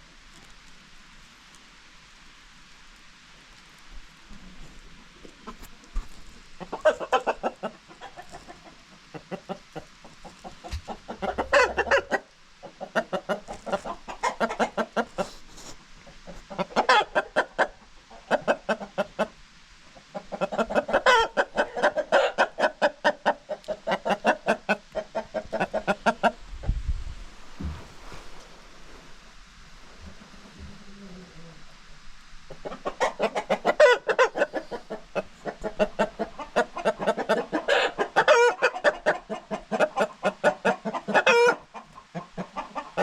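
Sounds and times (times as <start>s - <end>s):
chickens clucking: 4.3s - 26.8s, 30.0s - 43.0s.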